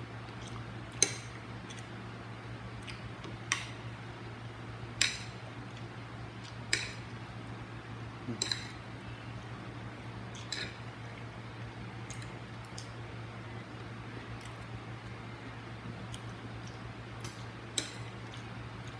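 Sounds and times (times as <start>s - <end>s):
utensils clinking on a plate: 8.3s - 8.8s.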